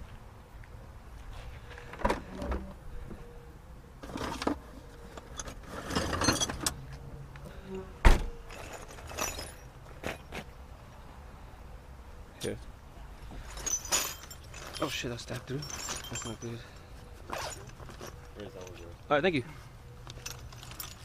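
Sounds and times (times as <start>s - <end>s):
metal tools clinking: 5.2s - 6.8s, 8.5s - 10.3s, 13.4s - 19.1s, 20.0s - 21.0s.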